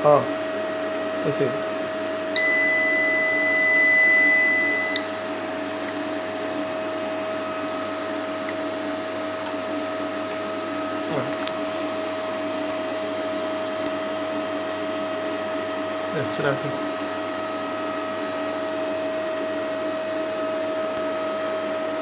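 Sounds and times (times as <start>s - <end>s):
steady electrical hum: 0.0s - 22.0s
long high buzzer beep: 2.4s - 5.4s.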